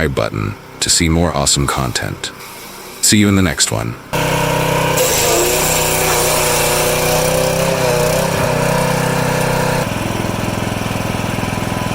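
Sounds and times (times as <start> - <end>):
small engine running: 4.1 - 11.9.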